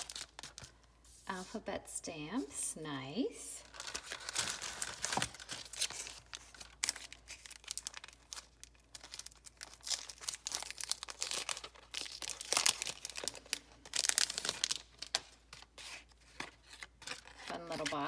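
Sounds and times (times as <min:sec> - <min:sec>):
packaging crinkling and rustling: 0:00.0 - 0:00.9, 0:03.6 - 0:18.0.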